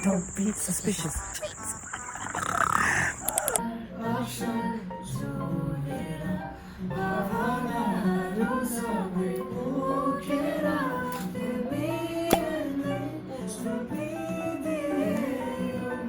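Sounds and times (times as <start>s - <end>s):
sharp click: 3.2s - 3.6s, 12.3s - 12.5s
plucked guitar: 4.4s - 16.0s.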